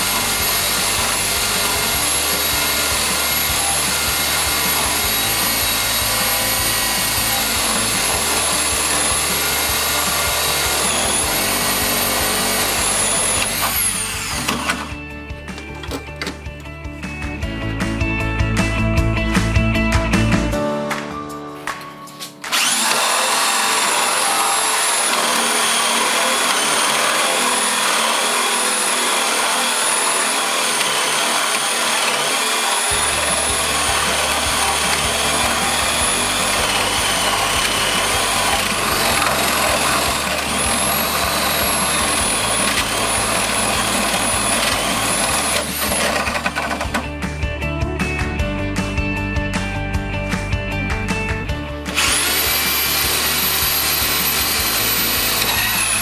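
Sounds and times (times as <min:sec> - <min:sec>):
drill motor whine: 0:00.0 - 0:15.1, 0:22.5 - 0:47.1, 0:51.9 - 0:56.0.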